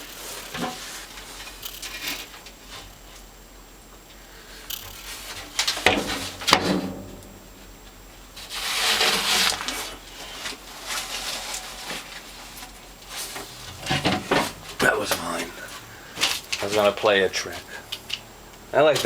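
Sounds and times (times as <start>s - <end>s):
hissing scraping rustle: 0.0s - 3.2s, 8.4s - 18.0s.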